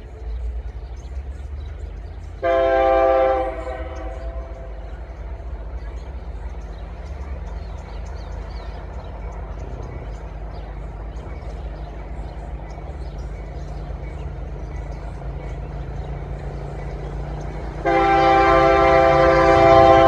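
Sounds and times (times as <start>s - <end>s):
low rumble of train: 0.0s - 20.0s
locomotive air horn blast: 2.4s - 4.8s, 17.8s - 20.0s.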